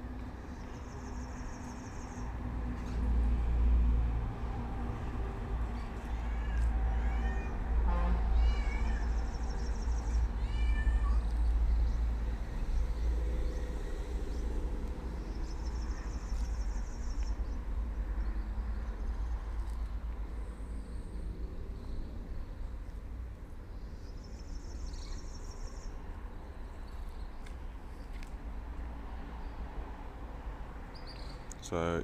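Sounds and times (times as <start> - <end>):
cat meowing: 6.0 - 9.4, 10.0 - 11.3.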